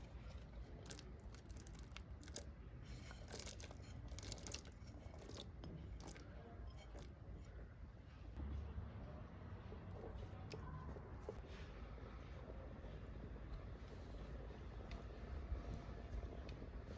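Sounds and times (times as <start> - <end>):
crisp crunching and tearing: 0.6 - 5.4.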